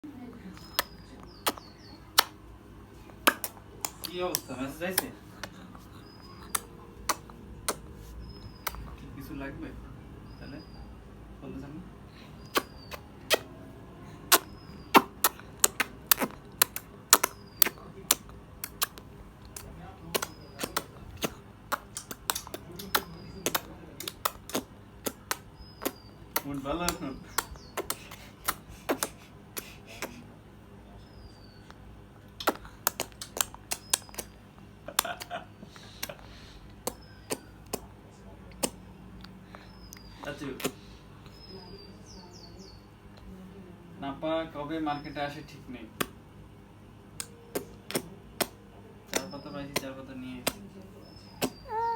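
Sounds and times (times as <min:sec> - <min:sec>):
baby making mouth clicks: 0:03.2 - 0:05.6, 0:06.4 - 0:07.9, 0:12.5 - 0:13.5, 0:14.3 - 0:19.0, 0:19.6 - 0:26.5, 0:27.4 - 0:30.2, 0:32.4 - 0:34.3, 0:47.2 - 0:50.6, 0:51.4 - 0:51.9.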